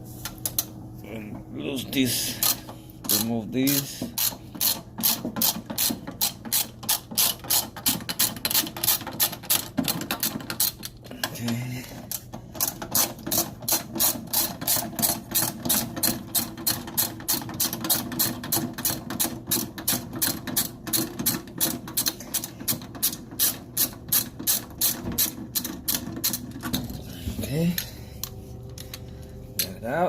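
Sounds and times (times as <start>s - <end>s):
ratchet wrench clicking: 2.4s - 7.6s.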